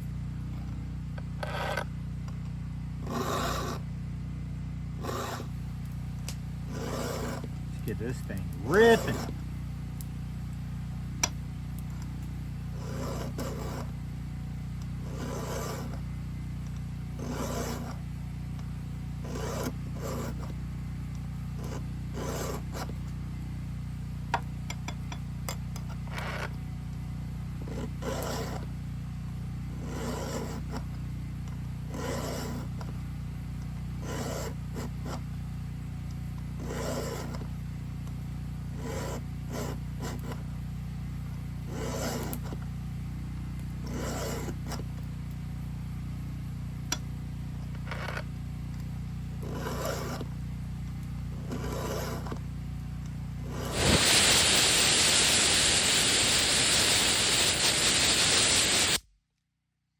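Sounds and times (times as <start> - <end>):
file rasping on chainsaw chain: 1.4 - 1.9, 3.0 - 3.9, 5.0 - 5.7, 6.6 - 9.5, 12.6 - 14.0, 14.8 - 16.1, 17.1 - 18.1, 19.1 - 20.6, 21.4 - 23.0, 27.6 - 28.8, 29.7 - 31.0, 31.6 - 33.0, 33.9 - 35.3, 36.4 - 37.6, 38.7 - 40.5, 41.6 - 42.6, 43.8 - 45.0, 49.4 - 50.4, 51.3 - 52.4, 53.4 - 59.0.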